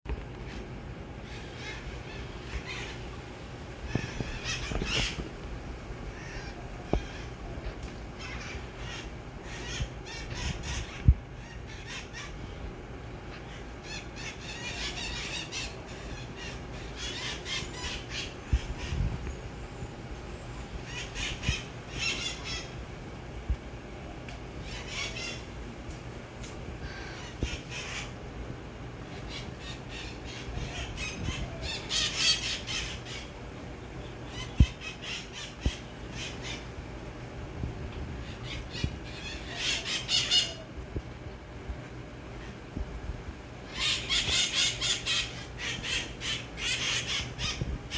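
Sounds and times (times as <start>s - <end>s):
parrots squawking: 1.3s - 3.1s, 3.9s - 5.3s, 6.1s - 12.5s, 13.3s - 19.0s, 20.9s - 22.8s, 24.6s - 25.5s, 26.9s - 28.2s, 29.1s - 33.4s, 34.3s - 36.7s, 38.2s - 40.7s, 43.7s - 47.8s.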